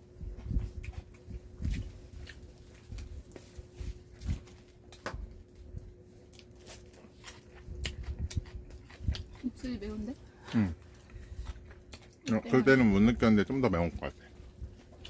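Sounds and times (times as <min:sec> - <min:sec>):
chewing and biting food: 0:00.0 - 0:15.0
faint steady hum: 0:00.0 - 0:15.0
clicks and knocks handling food: 0:00.3 - 0:09.4.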